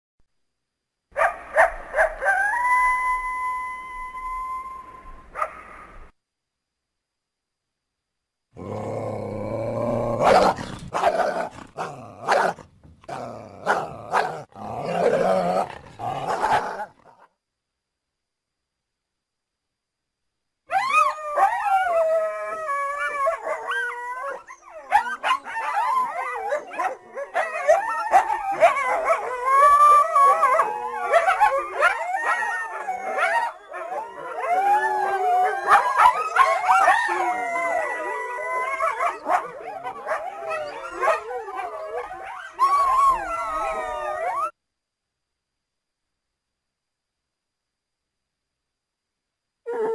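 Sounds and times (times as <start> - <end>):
coyotes howling and yipping: 1.2 - 5.9, 8.8 - 17.0, 20.7 - 44.6.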